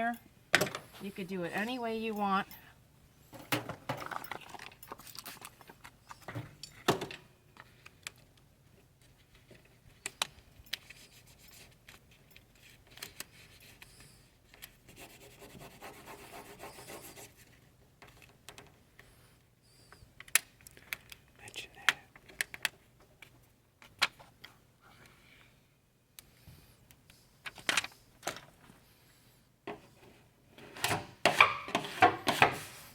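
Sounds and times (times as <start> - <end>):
scratchy rubbing on a surface: 14.9 - 17.5.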